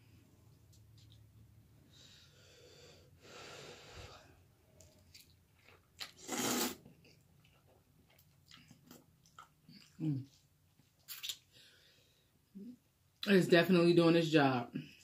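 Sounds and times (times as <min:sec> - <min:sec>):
person slurping: 0:06.0 - 0:06.9.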